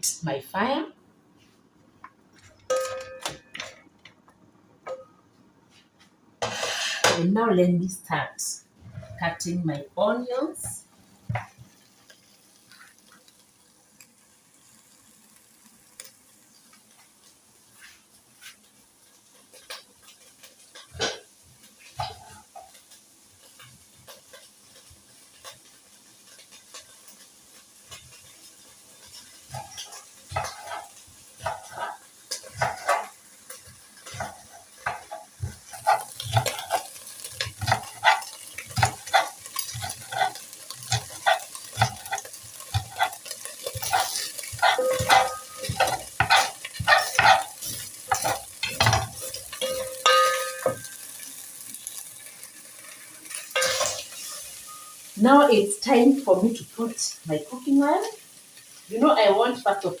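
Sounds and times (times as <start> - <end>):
steady hiss: 7.8 - 60.0.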